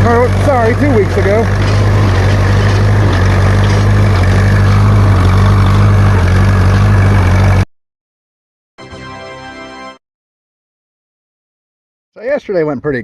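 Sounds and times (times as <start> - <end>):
tractor engine running: 0.0 - 7.7.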